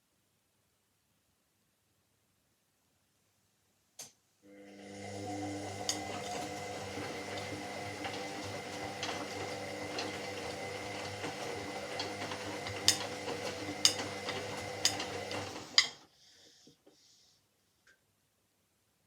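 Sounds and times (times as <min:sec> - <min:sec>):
washing machine motor hum: 0:04.4 - 0:16.0.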